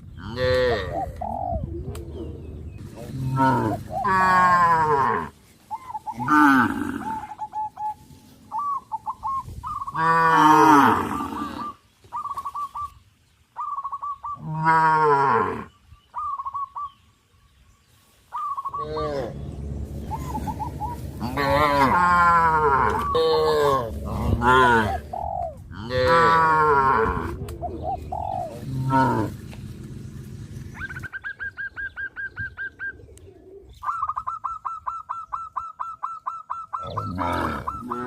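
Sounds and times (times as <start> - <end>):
short high bird calls: 11.2 - 14.5, 18.3 - 24.0
cows mooing: 18.8 - 25.1, 25.7 - 27.4, 28.5 - 30.4.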